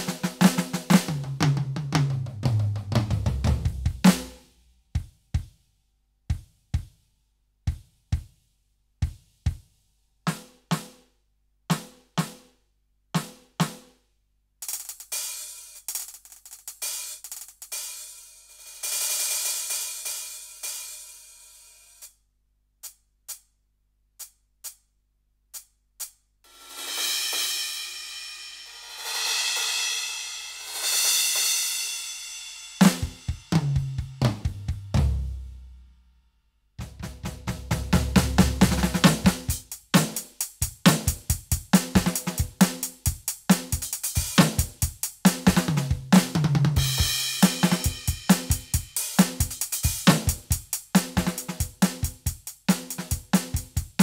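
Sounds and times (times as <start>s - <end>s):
loud cymbal crash: 26.5s - 33.4s.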